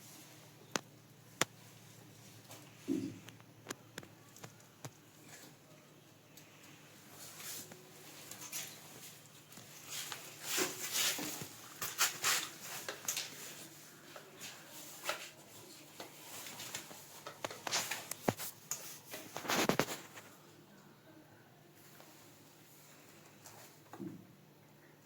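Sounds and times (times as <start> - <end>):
clicks and taps on plastic pipe: 2.4 - 5.5, 16.0 - 20.0
pipe scraping: 16.9 - 20.3.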